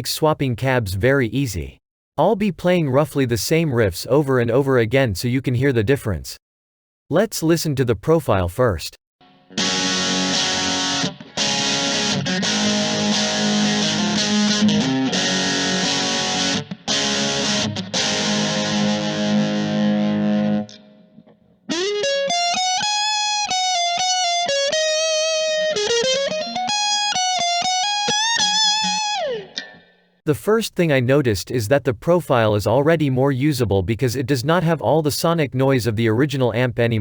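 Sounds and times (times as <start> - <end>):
distorted electric guitar chords: 9.2 - 29.9
electric guitar lead line: 9.2 - 30.0.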